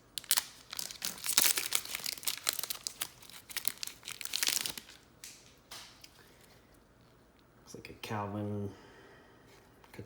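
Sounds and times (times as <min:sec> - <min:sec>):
wrapper tearing and crinkling: 0:00.2 - 0:05.4.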